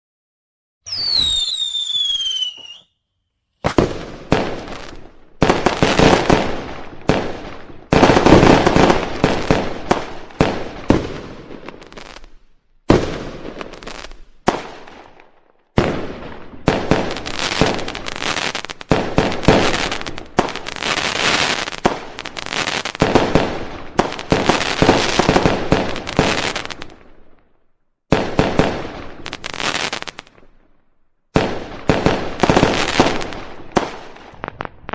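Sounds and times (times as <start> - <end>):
firework bangs: 0.9 - 2.9, 3.6 - 27.1, 28.1 - 30.4, 31.3 - 34.9
firework crackling: 0.9 - 2.9, 3.6 - 14.9, 15.9 - 27.2
firework whistle falling in pitch: 0.9 - 3.0.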